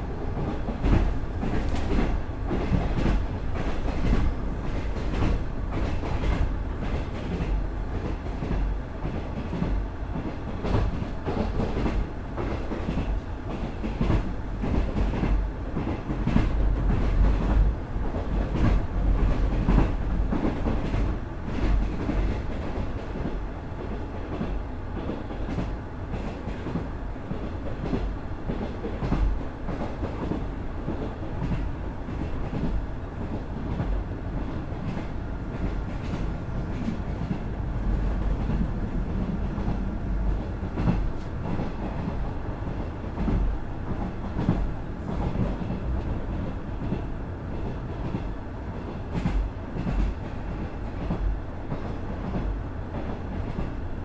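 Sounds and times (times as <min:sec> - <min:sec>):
railcar engine and wheels rumbling: 0:00.0 - 0:54.0.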